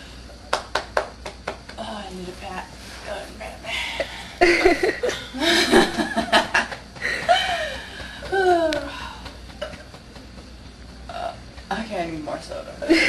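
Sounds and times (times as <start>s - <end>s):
young women laughing: 3.7s - 8.9s.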